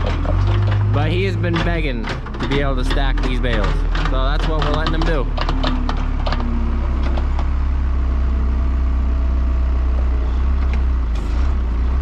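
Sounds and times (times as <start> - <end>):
faint clatters: 0.0 - 7.8
engine running steadily: 0.0 - 12.0.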